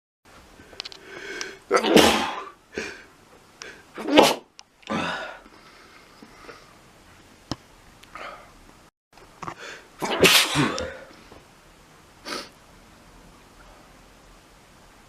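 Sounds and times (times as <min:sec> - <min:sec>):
faint breaths: 0:00.5 - 0:01.7, 0:04.9 - 0:06.9
person sneezing: 0:01.7 - 0:03.0, 0:04.0 - 0:05.3, 0:10.0 - 0:11.1.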